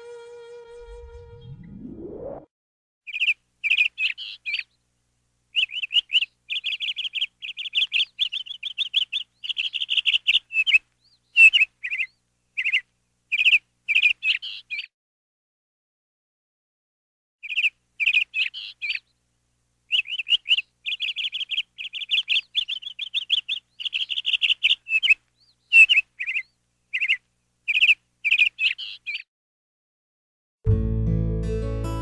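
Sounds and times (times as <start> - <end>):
short rising sweep: 0.0 - 2.5
canary trilling and chirping: 3.1 - 4.7, 5.6 - 14.9, 17.4 - 19.0, 19.9 - 29.2.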